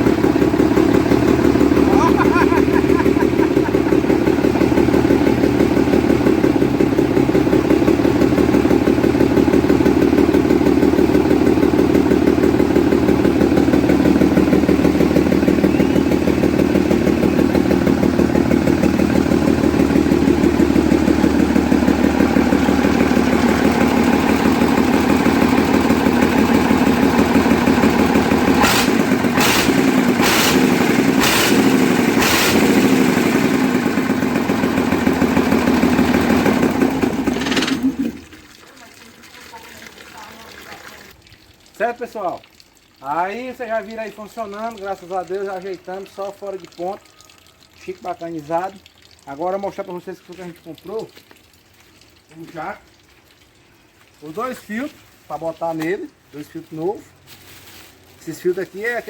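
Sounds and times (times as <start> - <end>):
diesel engine running: 0.0 - 38.4.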